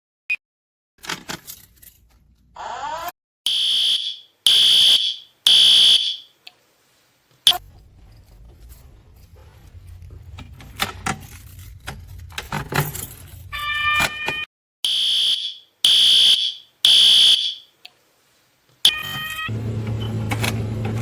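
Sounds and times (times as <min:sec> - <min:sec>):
fire alarm horn blasts: 0:03.5 - 0:06.3, 0:13.5 - 0:17.7.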